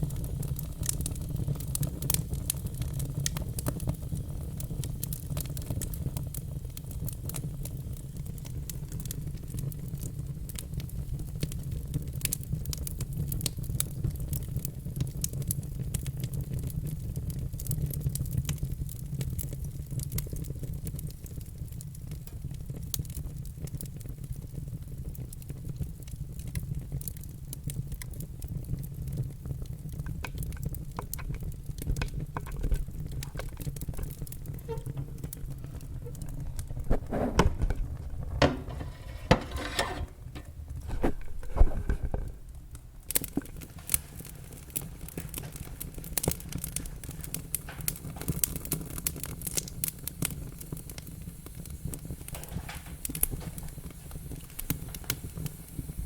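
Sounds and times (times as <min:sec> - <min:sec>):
logs crackling and popping: 0:00.0 - 0:55.9
low rumble of flames: 0:00.0 - 0:56.0
fire hissing: 0:32.3 - 0:42.4, 0:43.0 - 0:56.0.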